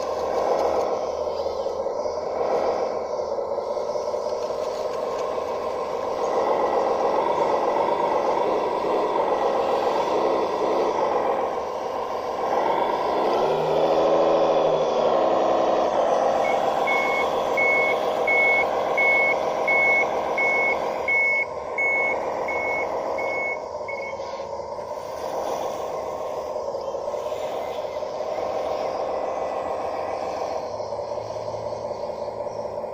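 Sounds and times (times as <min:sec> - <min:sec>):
model bulldozer drive whining: 0:00.0 - 0:32.9
reversing beeper: 0:16.3 - 0:24.3.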